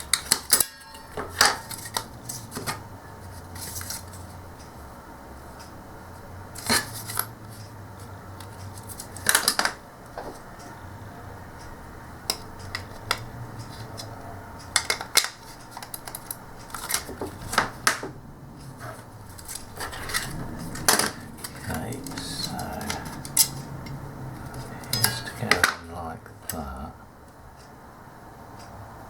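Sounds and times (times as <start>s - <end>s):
low steady hum: 0.0s - 29.0s.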